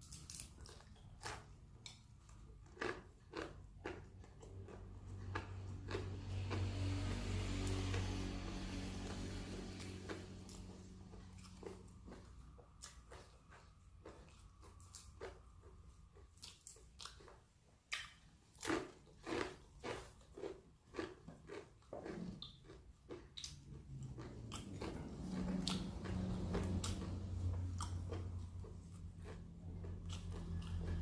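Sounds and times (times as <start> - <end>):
crunchy chewing: 0.0 - 31.0
low hum: 4.4 - 16.5, 23.4 - 31.0.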